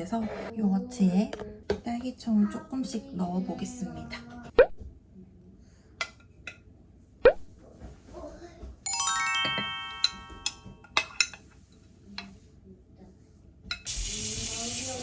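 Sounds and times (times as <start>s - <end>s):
descending chime: 8.9s - 10.8s.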